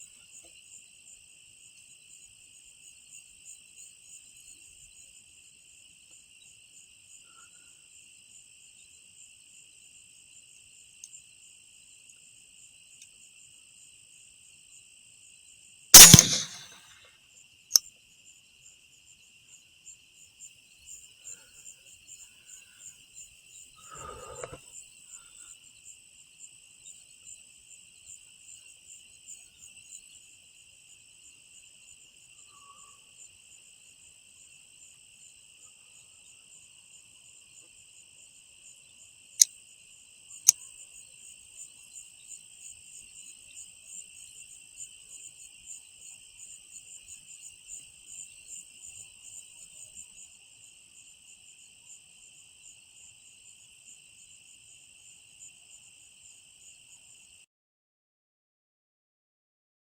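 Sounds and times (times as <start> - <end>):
night insects chirring: 15.3 - 16.7, 21.3 - 25.5, 26.2 - 57.4
sharp cracks: 16.0 - 16.8.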